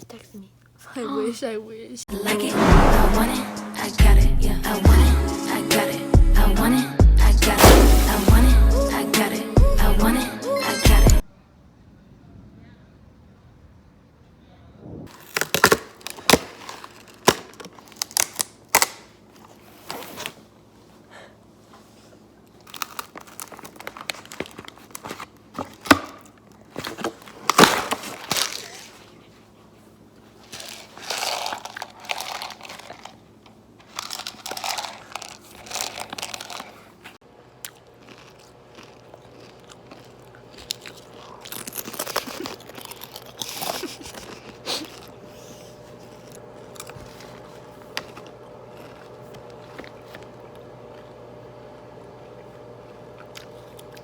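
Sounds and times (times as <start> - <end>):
packaging crinkling and tearing: 15.1 - 20.5, 22.4 - 29.2, 30.4 - 37.2, 38.0 - 45.2.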